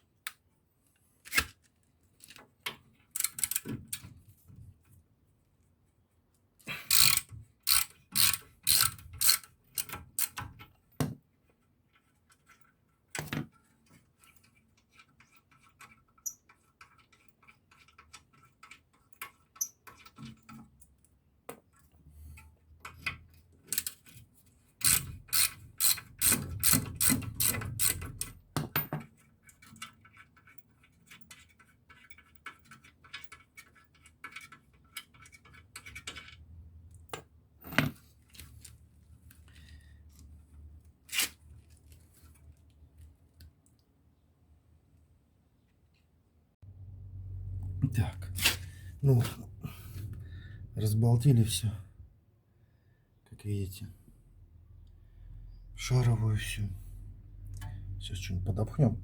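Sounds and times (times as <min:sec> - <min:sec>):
ratchet wrench clicking: 0:06.9 - 0:10.4, 0:24.8 - 0:28.3.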